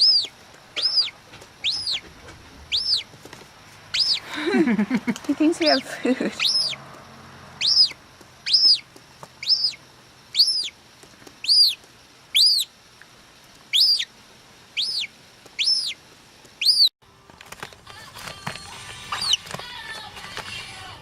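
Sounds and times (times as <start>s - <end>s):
gull chick peeping: 0.0s - 3.1s, 3.9s - 4.5s, 5.2s - 6.8s, 7.6s - 10.8s, 11.4s - 12.7s, 13.7s - 14.1s, 14.7s - 16.9s, 19.1s - 19.5s.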